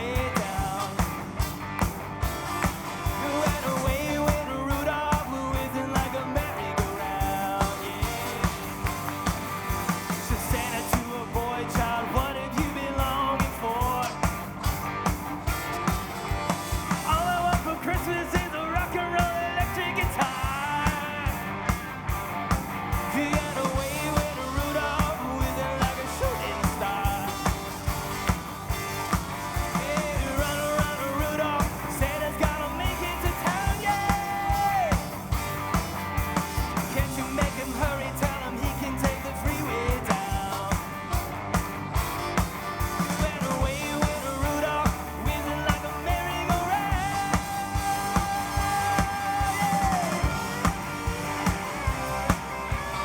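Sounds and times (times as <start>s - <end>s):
rock and roll song: 0.0s - 53.0s
steady drum beat: 0.0s - 53.0s.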